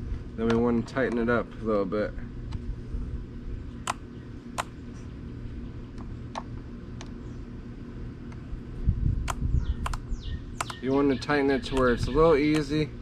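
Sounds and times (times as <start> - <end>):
sharp metal clicks: 10.6 - 10.9, 11.6 - 12.8.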